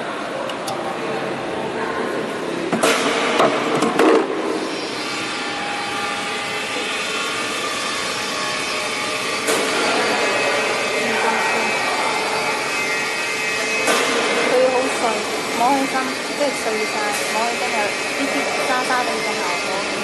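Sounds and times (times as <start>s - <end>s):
chopping machine whirring: 2.8s - 20.0s.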